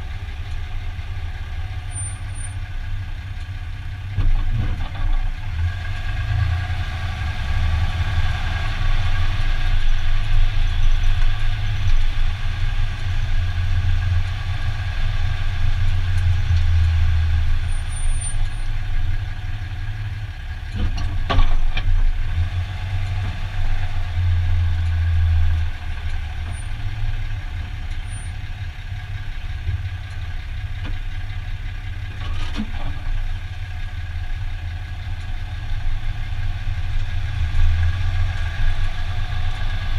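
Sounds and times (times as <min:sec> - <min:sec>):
pickup truck engine rumble: 0:00.0 - 0:39.9.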